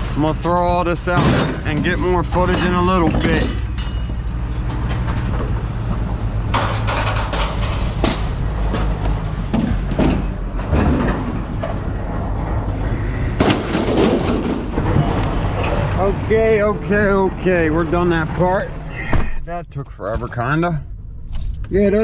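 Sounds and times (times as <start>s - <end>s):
low rumble: 0.0s - 22.0s
metal parts clanking and banging: 0.9s - 12.6s, 13.3s - 16.1s.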